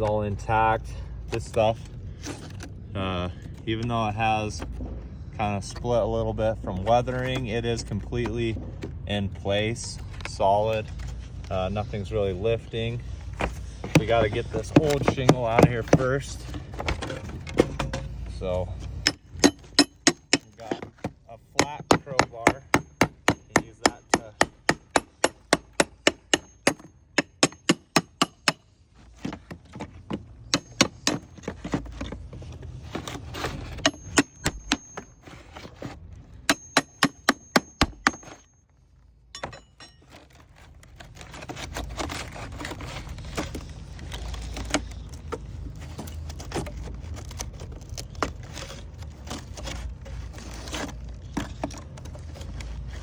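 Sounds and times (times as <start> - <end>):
wood shake scraping and clicking: 6.8 - 38.4, 39.8 - 53.0
hammer tapping crowbar: 19.0 - 21.0, 21.6 - 29.5, 30.1 - 31.8, 33.7 - 35.2, 36.5 - 38.5, 39.4 - 40.0.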